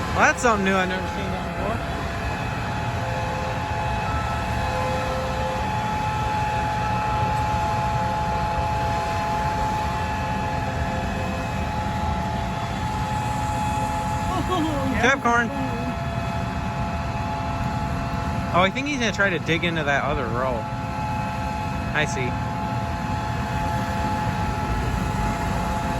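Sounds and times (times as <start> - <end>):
combine harvester engine rumble: 0.0 - 5.4, 10.9 - 17.6
steady high whine: 0.0 - 25.9.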